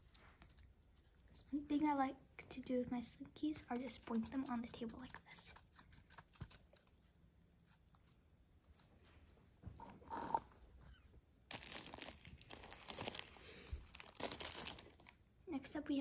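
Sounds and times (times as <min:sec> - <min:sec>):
plastic packaging crinkling: 0:11.5 - 0:15.2.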